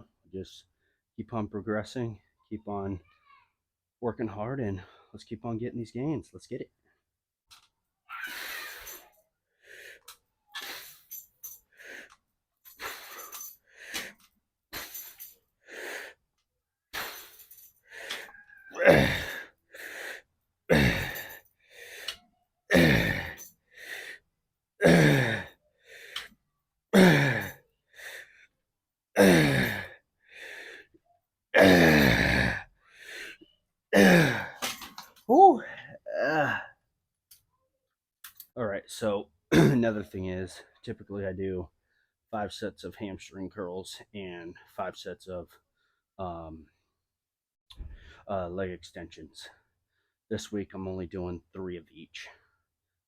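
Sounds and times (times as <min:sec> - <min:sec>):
man breathing hard: 0:09.6 - 0:14.2, 0:14.8 - 0:16.2, 0:16.9 - 0:22.2, 0:22.8 - 0:24.2, 0:24.8 - 0:26.3, 0:27.0 - 0:28.5, 0:29.2 - 0:31.0, 0:32.8 - 0:33.4
man grunting with effort: 0:18.7 - 0:19.5, 0:20.7 - 0:21.4, 0:22.7 - 0:23.4, 0:24.8 - 0:25.5, 0:27.0 - 0:27.6, 0:29.2 - 0:29.9, 0:31.6 - 0:32.6, 0:34.0 - 0:34.6, 0:35.3 - 0:36.7.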